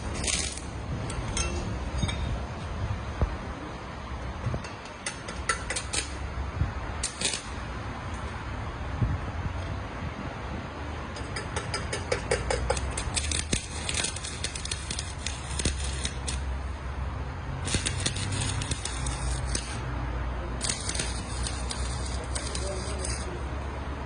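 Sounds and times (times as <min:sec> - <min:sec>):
welding arc crackling: 0:00.0 - 0:00.8, 0:05.5 - 0:06.2, 0:07.0 - 0:07.7, 0:12.5 - 0:16.5, 0:17.6 - 0:19.9, 0:20.6 - 0:23.4.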